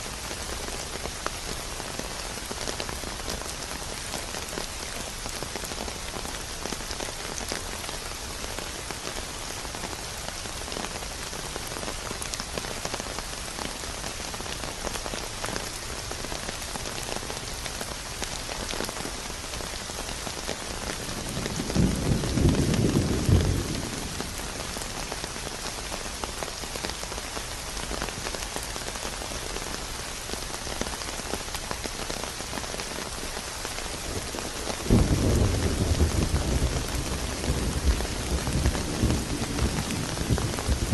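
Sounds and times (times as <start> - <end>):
rain pattering: 0.0 - 40.9
low thunder rumble: 21.3 - 24.4, 34.9 - 40.9.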